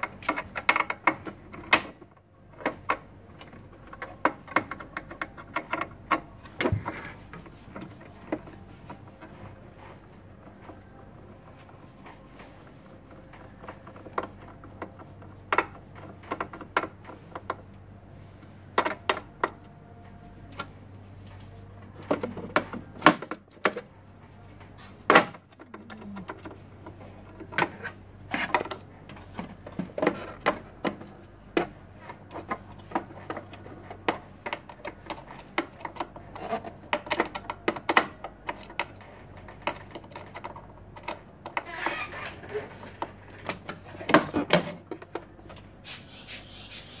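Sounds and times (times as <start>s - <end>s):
low steady hum: 0.0s - 45.8s.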